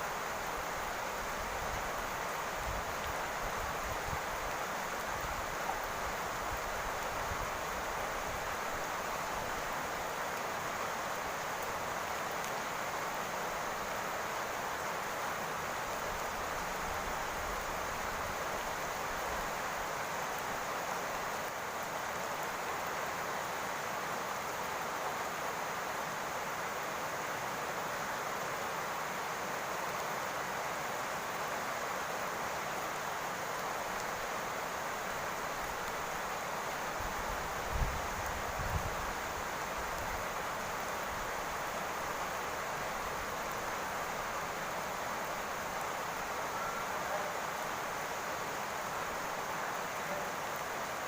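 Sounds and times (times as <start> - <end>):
rain on a roof: 0.0 - 51.0.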